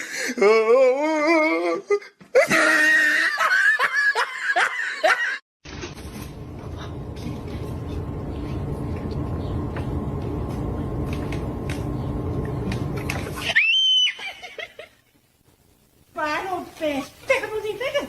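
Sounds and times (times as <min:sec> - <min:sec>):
person laughing hard: 0:01.9 - 0:05.4, 0:14.0 - 0:15.0
low background hum: 0:05.7 - 0:18.0.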